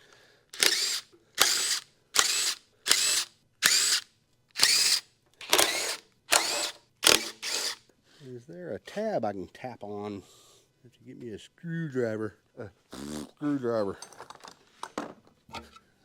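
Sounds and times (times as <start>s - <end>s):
impact wrench bursts: 0.5s - 7.8s.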